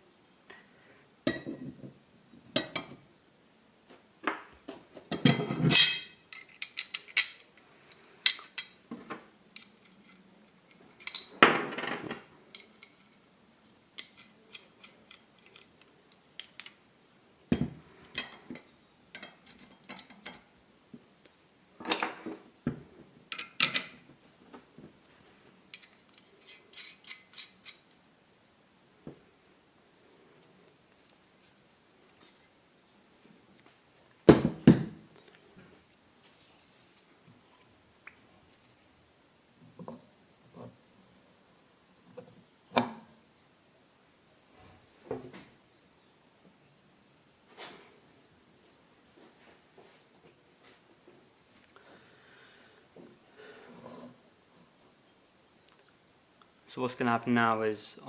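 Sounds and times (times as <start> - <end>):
metal clinks and knocks: 5.1 - 7.5.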